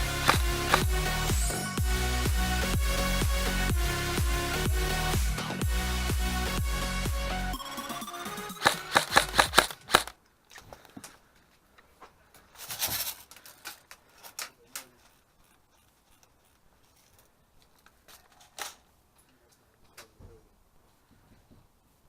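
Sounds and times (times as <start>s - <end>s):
scattered clicks: 8.4s - 10.6s
airsoft gun firing: 8.6s - 10.1s
rustling of movement: 9.1s - 22.0s.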